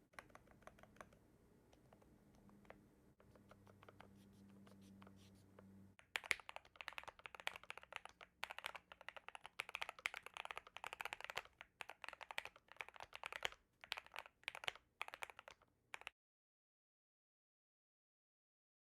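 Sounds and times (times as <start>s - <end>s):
mechanical keyboard typing: 6.0s - 16.1s.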